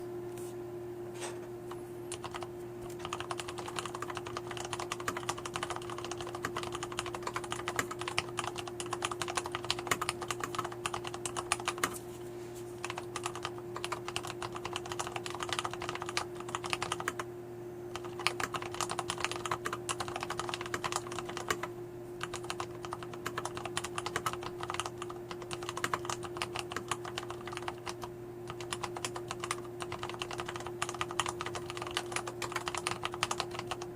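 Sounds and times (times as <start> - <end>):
fast typing on mechanical keyboard: 2.1 - 12.0, 12.8 - 17.2, 17.9 - 33.9.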